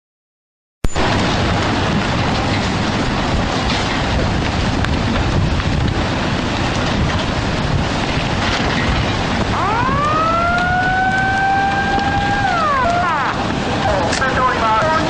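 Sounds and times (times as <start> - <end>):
loud rushing noise: 0.9 - 15.0
siren wailing: 9.5 - 14.0.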